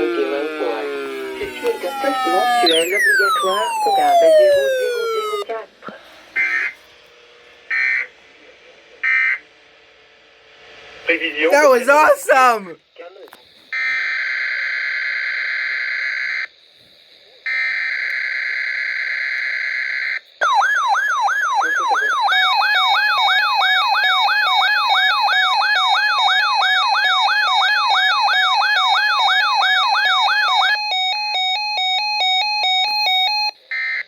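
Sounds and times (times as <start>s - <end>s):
siren-like sweeping tone: 0.9s - 5.4s.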